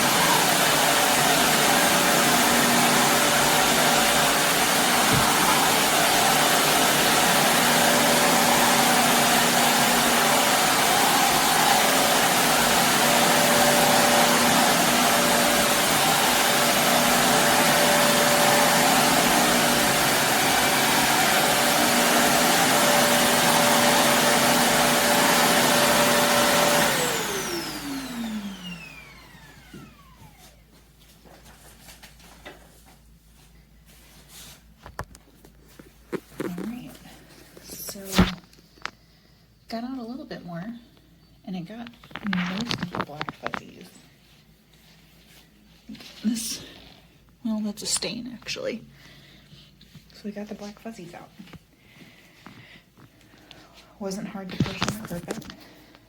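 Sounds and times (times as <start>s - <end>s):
vacuum cleaner running on carpet: 0.0s - 30.6s, 54.5s - 55.5s
vacuum motor whine spinning down: 0.0s - 30.6s.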